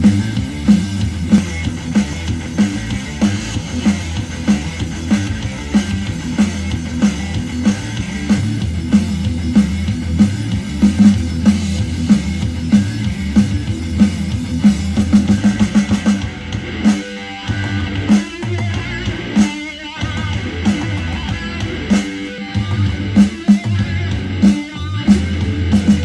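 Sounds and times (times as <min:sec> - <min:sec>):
instrumental rock music: 0:00.0 - 0:26.0.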